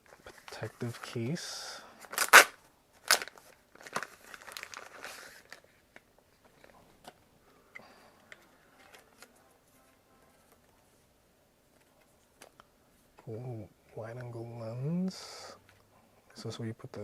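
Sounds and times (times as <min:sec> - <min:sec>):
packaging crinkling and tearing: 0:02.0 - 0:05.8.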